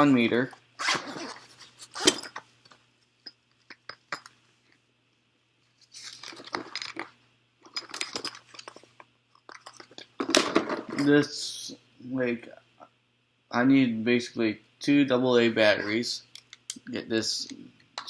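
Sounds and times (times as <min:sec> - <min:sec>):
tools clattering in toolbox: 0:06.0 - 0:07.1, 0:07.7 - 0:08.9.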